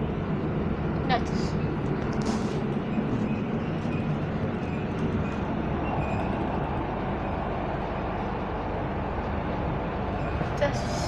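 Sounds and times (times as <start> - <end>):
train carriage rumble: 0.0 - 11.0.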